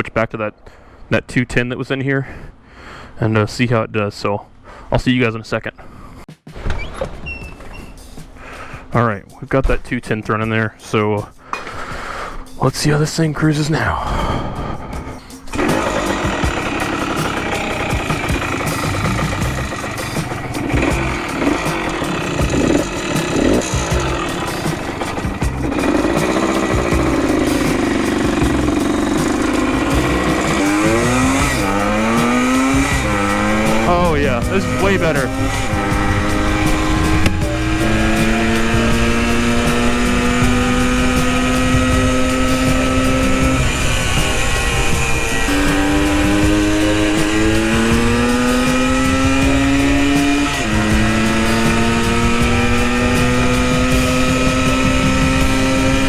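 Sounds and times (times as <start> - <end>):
two-stroke motorcycle accelerating: 15.5 - 56.0.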